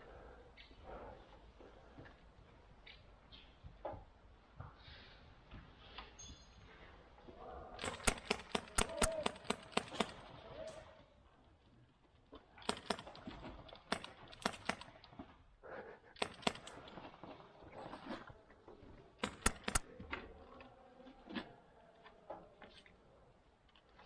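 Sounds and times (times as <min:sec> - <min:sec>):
airsoft gun shots: 0:07.8 - 0:10.3, 0:12.7 - 0:15.0, 0:16.2 - 0:17.0, 0:19.2 - 0:19.9.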